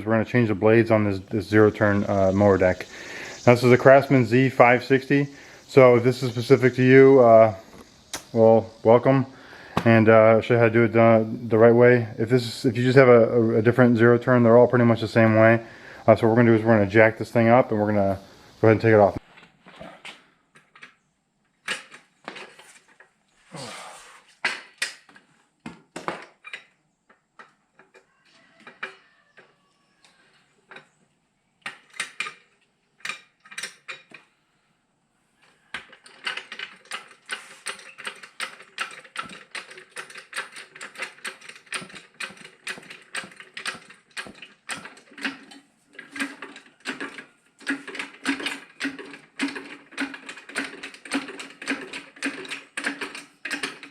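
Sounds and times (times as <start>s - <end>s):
jack ratcheting clicks: 1.6s - 8.4s, 35.8s - 53.9s
metal clicks and knocks: 31.6s - 34.3s, 35.7s - 53.9s.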